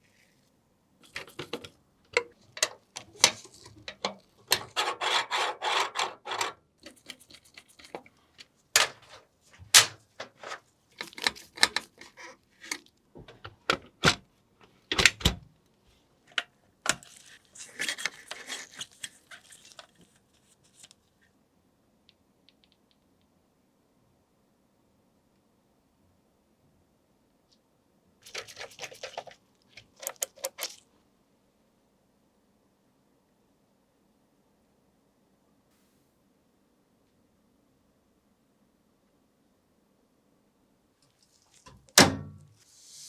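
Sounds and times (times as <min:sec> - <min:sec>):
rubbing and scraping: 0:03.0 - 0:08.2.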